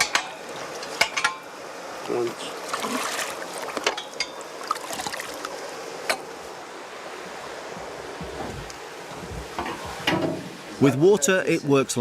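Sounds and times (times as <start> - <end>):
water running through channel: 0.0 - 12.0
light knocks and scrapes: 8.2 - 10.5.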